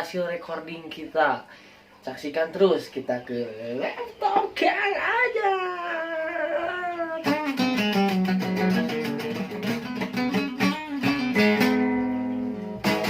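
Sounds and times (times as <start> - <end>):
plucked guitar music: 7.2 - 13.0.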